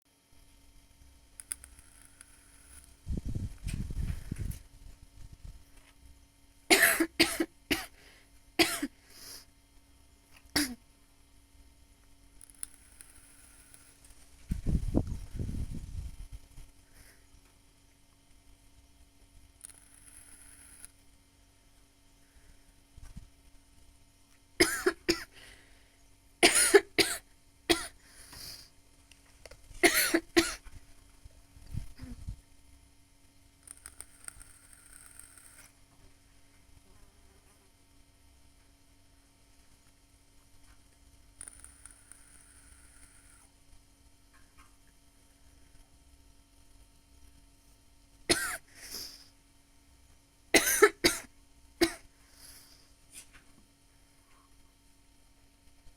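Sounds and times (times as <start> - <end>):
woman coughing: 6.7 - 7.9, 8.6 - 8.9, 10.6 - 10.8, 24.6 - 25.3, 26.4 - 28.0, 29.8 - 30.6, 48.3 - 49.1, 50.6 - 52.0.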